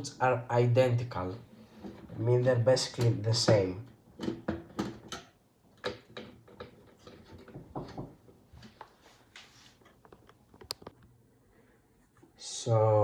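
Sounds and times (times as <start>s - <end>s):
computer parts being handled: 4.2s - 11.0s.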